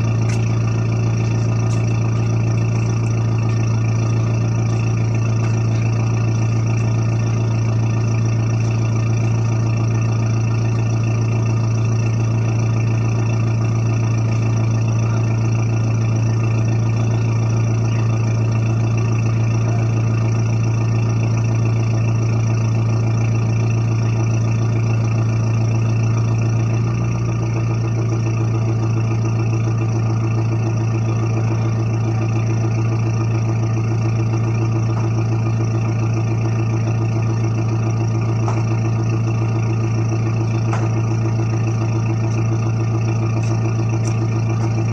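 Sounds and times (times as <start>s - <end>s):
diesel engine idling: 0.0s - 44.9s.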